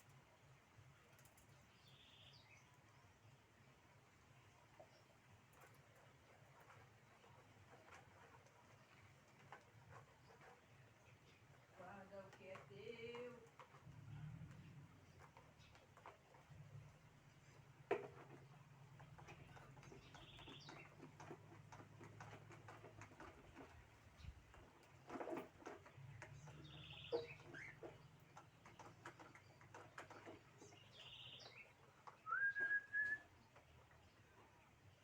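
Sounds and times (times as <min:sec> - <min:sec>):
birds chirping: 0:18.4 - 0:22.3, 0:25.6 - 0:35.0.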